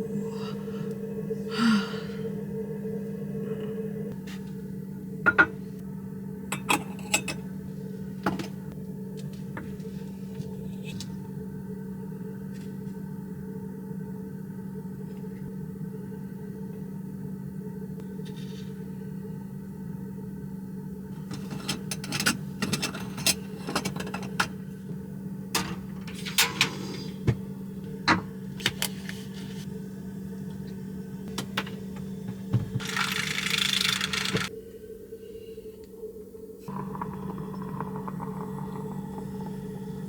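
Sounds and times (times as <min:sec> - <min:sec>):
steady low hum: 0:00.0 - 0:40.0
objects clicking and clattering: 0:32.8 - 0:34.5.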